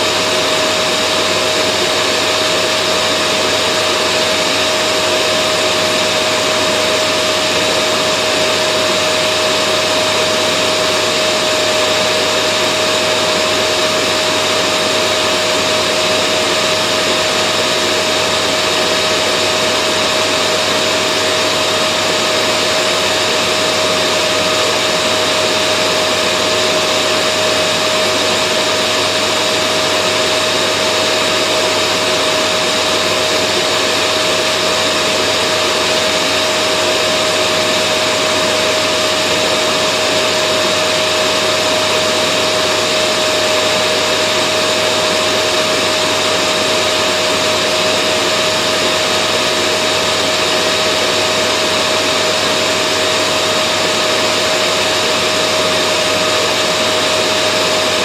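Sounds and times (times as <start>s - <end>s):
vacuum cleaner running: 0.0s - 58.0s.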